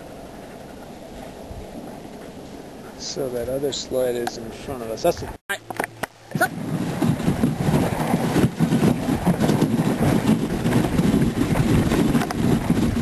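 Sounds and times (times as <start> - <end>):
sled runners scraping on snow: 6.5 - 13.0.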